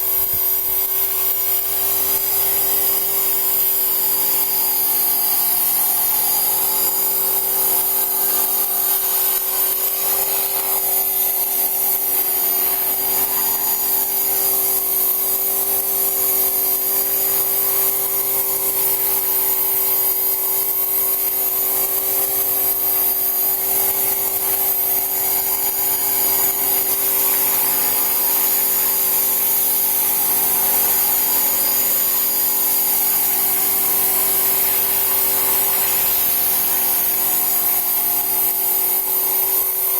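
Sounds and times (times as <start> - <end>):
model aircraft motor whining: 0.0 - 39.9.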